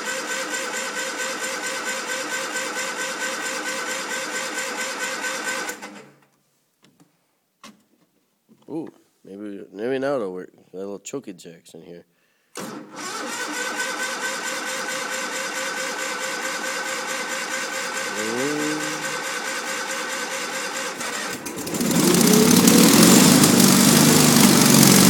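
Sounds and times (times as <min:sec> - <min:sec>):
engine starter cranking: 0:00.0 - 0:06.2, 0:12.6 - 0:25.0
lawn tractor engine running: 0:12.7 - 0:25.0.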